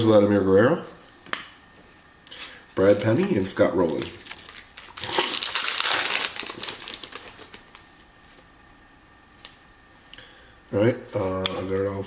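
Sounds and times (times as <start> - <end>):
foil wrapper crinkling: 3.8 - 8.4.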